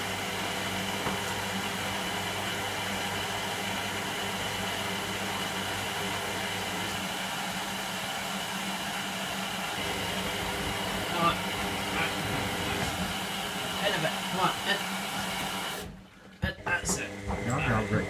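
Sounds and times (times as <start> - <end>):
washing machine running: 0.0 - 18.0.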